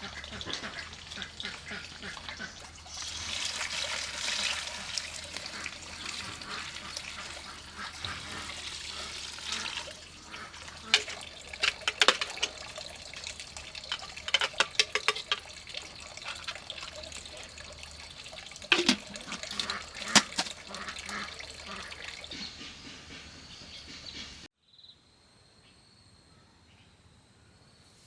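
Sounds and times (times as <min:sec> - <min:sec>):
water splashing and sloshing: 0:00.0 - 0:23.4
faint insect drone: 0:24.6 - 0:28.0.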